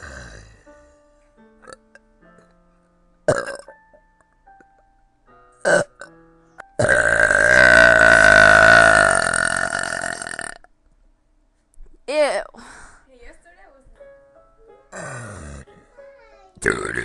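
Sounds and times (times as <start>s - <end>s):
long loud belch: 0.0s - 0.6s, 3.3s - 3.7s, 5.6s - 6.1s, 6.8s - 10.7s, 15.0s - 15.7s, 16.6s - 17.0s.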